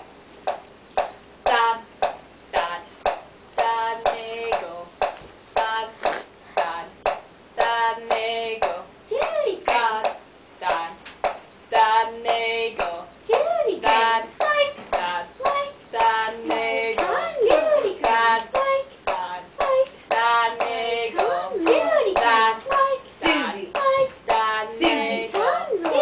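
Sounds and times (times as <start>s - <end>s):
sharp clicks and hand sounds: 0.4s - 26.0s
high voice chanting: 16.4s - 26.0s.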